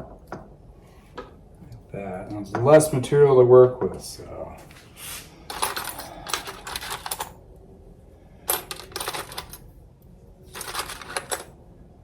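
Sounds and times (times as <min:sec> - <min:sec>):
small metal parts rattling: 0:05.5 - 0:07.4, 0:08.4 - 0:09.7, 0:10.5 - 0:11.6.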